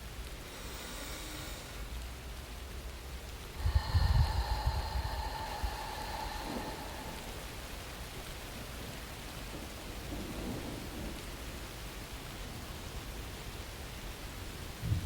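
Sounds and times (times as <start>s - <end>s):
steady rain: 0.0s - 15.0s
low rumble of thunder: 3.6s - 13.7s, 14.6s - 15.0s.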